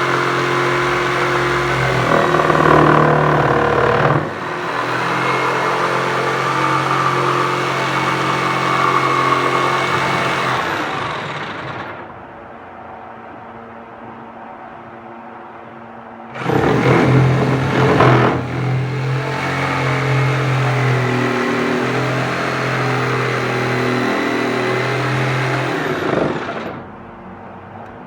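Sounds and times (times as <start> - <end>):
power tool motor humming: 0.0 - 11.9, 16.4 - 26.8.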